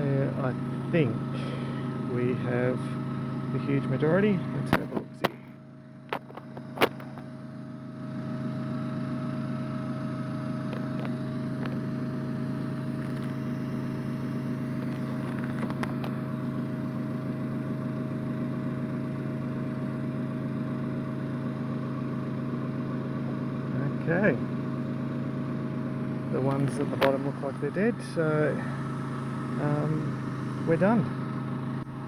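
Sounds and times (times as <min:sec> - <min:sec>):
vacuum motor humming: 0:00.0 - 0:32.0.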